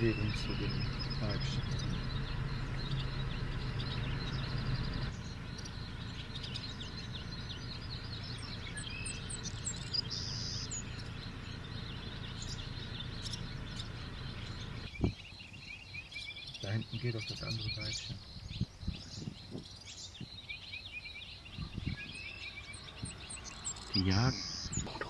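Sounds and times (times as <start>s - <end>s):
steady low hum: 0.0s - 15.1s
small birds chirping: 0.0s - 25.0s.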